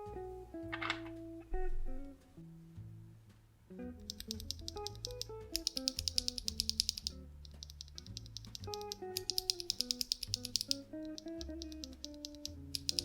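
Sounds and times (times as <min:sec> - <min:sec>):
plucked guitar background music: 0:00.0 - 0:13.0
mechanical keyboard typing: 0:04.0 - 0:13.0.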